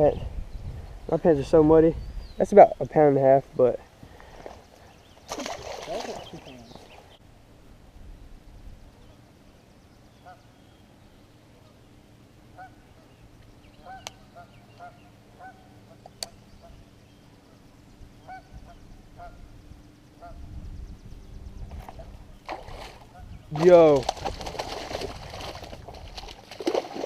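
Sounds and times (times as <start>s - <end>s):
geese honking: 10.2s - 10.5s, 12.5s - 13.1s, 13.8s - 16.8s, 18.2s - 19.5s, 20.2s - 20.4s.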